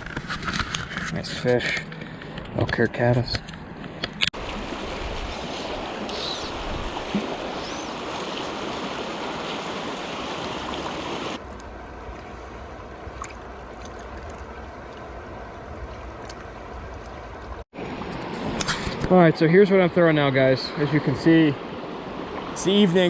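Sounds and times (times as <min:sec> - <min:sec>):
river flowing over rocks: 0:04.5 - 0:18.0.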